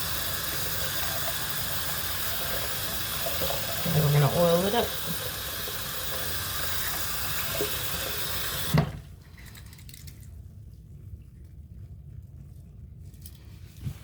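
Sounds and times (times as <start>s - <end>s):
tap water running into sink: 0.0s - 9.1s
faucet shut-off knock: 7.5s - 9.0s.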